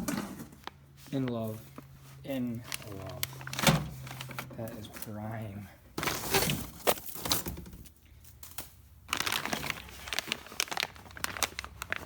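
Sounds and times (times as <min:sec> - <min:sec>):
packaging crinkling and rustling: 0:02.5 - 0:05.4, 0:08.5 - 0:12.0.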